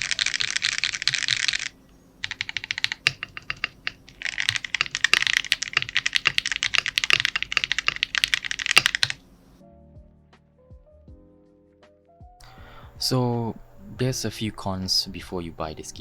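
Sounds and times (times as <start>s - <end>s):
mechanical keyboard typing: 0.0s - 9.2s.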